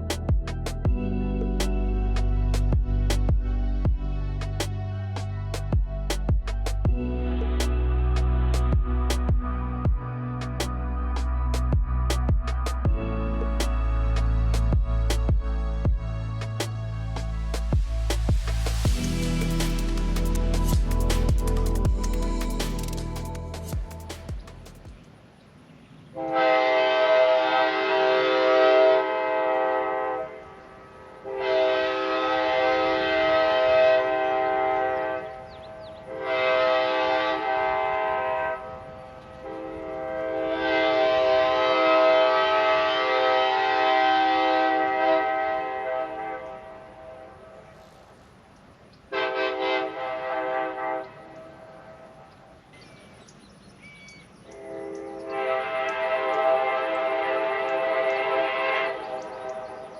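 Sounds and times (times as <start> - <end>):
train horn blast: 26.2 - 47.9, 49.1 - 52.3, 54.5 - 59.9.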